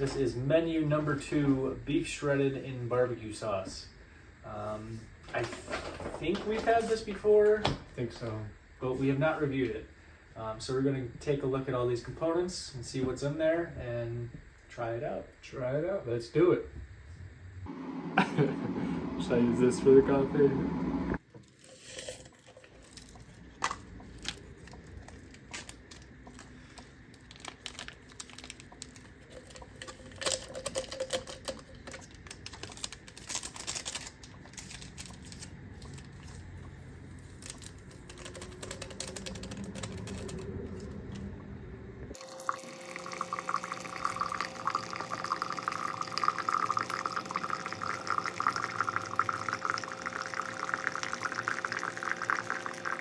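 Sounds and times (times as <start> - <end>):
faint steady hum: 0.0 - 53.0
water pouring into a container: 42.2 - 53.0.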